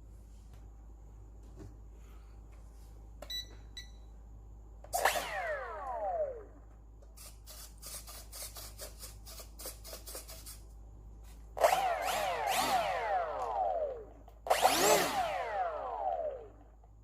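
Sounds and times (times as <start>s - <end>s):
small electric motor whining: 11.6s - 16.6s.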